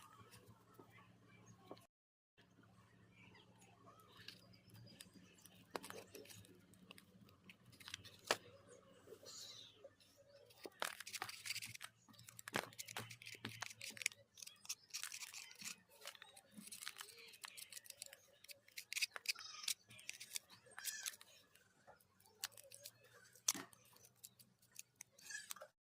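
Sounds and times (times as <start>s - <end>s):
small tools clicking and tapping: 10.5s - 25.7s.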